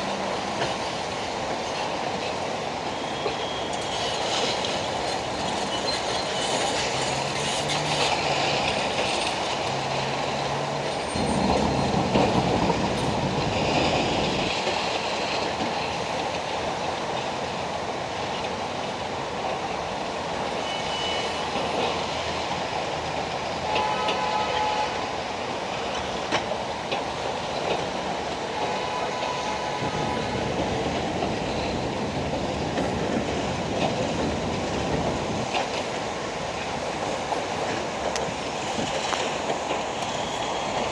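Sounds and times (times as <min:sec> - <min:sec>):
high metallic squeals: 0:20.4 - 0:22.8.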